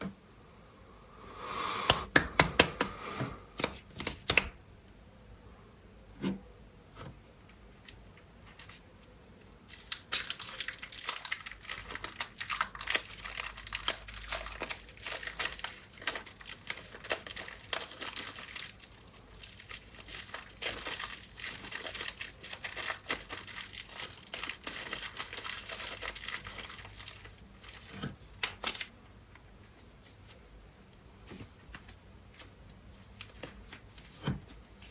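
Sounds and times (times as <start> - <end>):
plastic packaging tearing and crinkling: 8.4 - 29.0.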